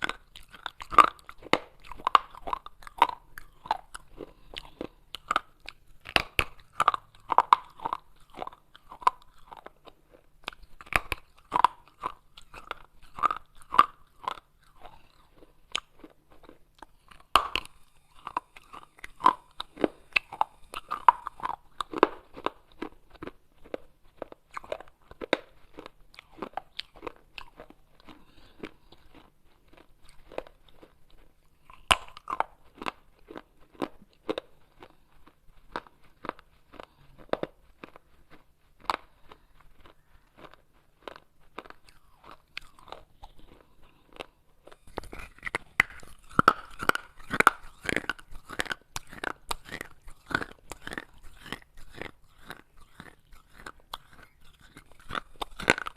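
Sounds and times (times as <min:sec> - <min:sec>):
clay pot pieces crunching: 0:00.0 - 0:55.9.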